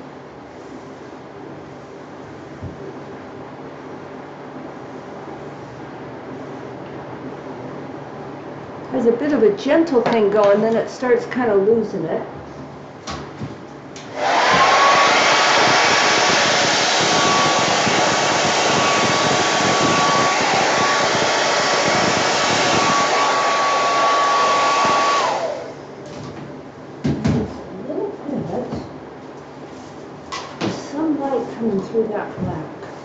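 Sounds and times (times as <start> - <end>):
hair dryer running: 14.0 - 25.9.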